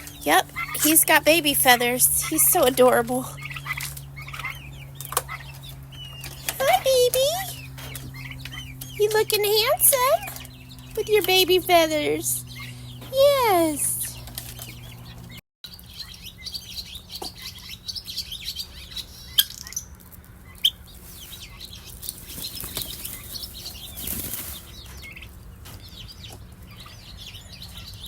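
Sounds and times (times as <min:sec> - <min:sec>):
small birds chirping: 0:00.0 - 0:28.0
feathers rustling and flapping: 0:21.0 - 0:25.0.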